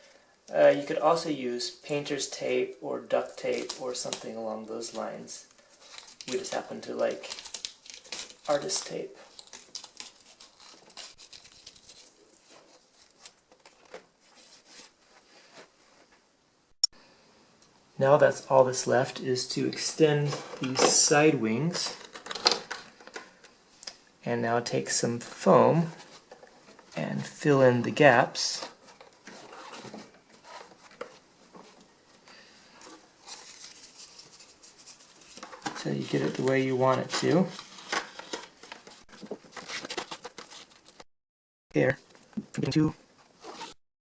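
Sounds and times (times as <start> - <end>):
tape rustling and squeaking: 1.9 - 16.1, 28.6 - 31.9, 32.8 - 41.0, 43.2 - 43.8.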